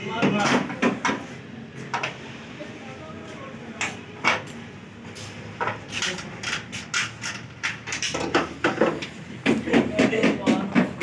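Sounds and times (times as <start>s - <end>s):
knocks and clanks on car: 8.2s - 11.0s.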